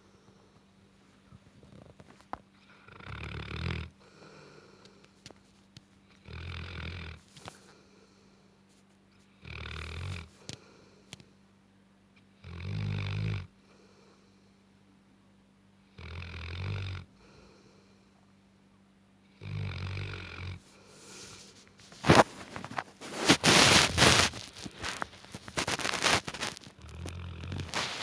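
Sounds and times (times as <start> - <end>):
dog snoring: 2.6 - 4.3, 6.2 - 7.7, 9.4 - 10.6, 12.4 - 13.6, 15.9 - 17.5, 19.3 - 28.0
loud rustling: 21.0 - 28.0.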